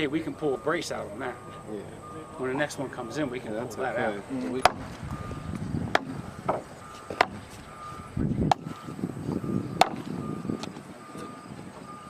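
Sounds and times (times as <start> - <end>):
faint high beeping: 0.0 - 12.0
sharp knocks: 4.6 - 5.0, 5.9 - 7.6, 8.4 - 8.8, 9.8 - 10.1.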